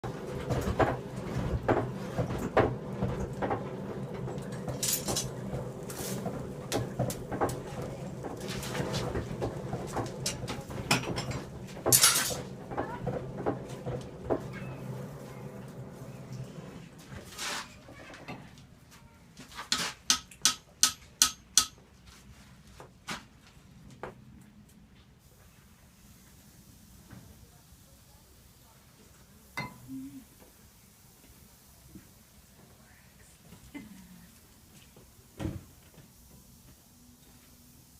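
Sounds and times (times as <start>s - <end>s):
hammer striking metal on anvil: 20.1s - 21.8s.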